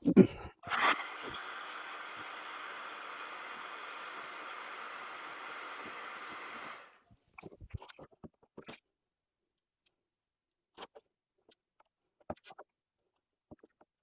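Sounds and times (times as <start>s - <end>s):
air tool blowing hiss: 0.7s - 7.0s.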